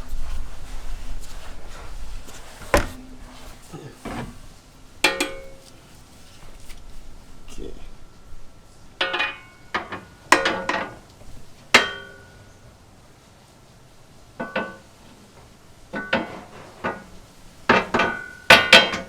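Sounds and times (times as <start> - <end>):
metal bar clanking against car: 2.7 - 3.2, 5.0 - 5.6.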